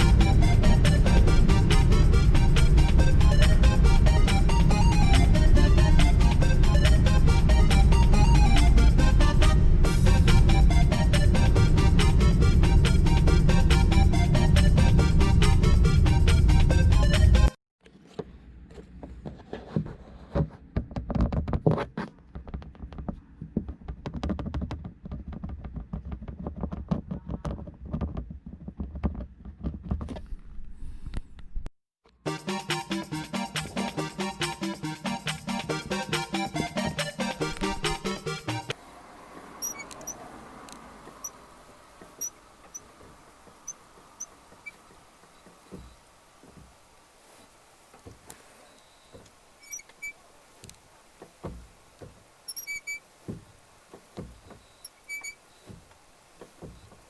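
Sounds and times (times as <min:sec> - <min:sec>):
low steady rumble: 0:00.0 - 0:17.5
clutch pedal squeaking: 0:39.6 - 0:46.8, 0:48.0 - 0:57.0
soft thumps: 0:41.0 - 0:57.0
dashboard rattle clicks: 0:49.1 - 0:57.0.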